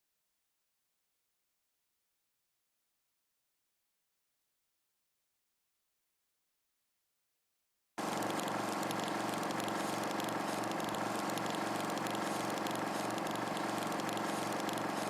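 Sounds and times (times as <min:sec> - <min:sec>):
small electric motor humming: 0:08.0 - 0:15.0.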